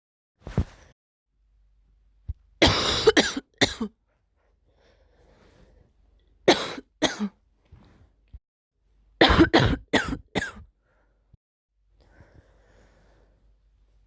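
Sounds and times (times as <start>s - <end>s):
person coughing: 2.6s - 3.9s, 6.5s - 7.3s, 9.2s - 10.6s.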